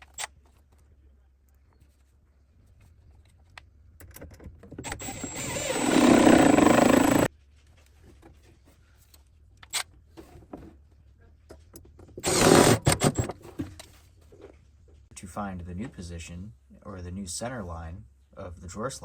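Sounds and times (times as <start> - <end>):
cordless drill driving screw: 4.8 - 7.3, 12.2 - 13.3.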